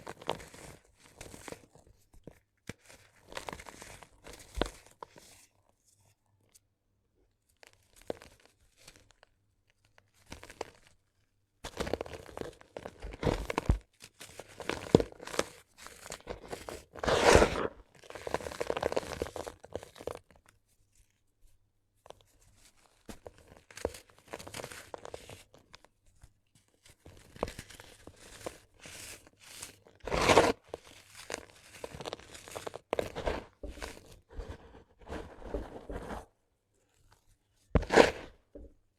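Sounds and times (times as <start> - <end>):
sand-cement crunching: 31.4 - 36.3, 37.8 - 38.3.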